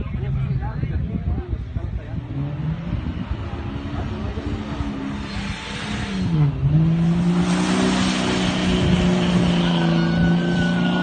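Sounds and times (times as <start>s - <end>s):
tyres and wind rushing: 0.0s - 11.0s
off-road vehicle engine revving: 1.8s - 11.0s.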